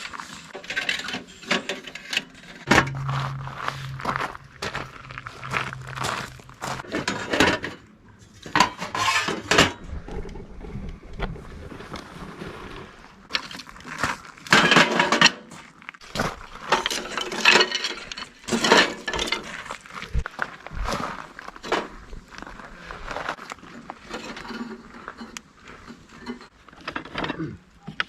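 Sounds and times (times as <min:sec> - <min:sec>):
metal objects clinking: 0:16.7 - 0:19.7.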